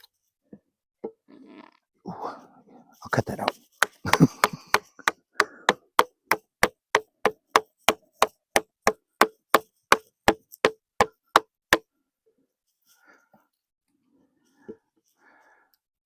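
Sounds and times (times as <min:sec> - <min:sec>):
chisel blows into timber: 0:03.4 - 0:08.4.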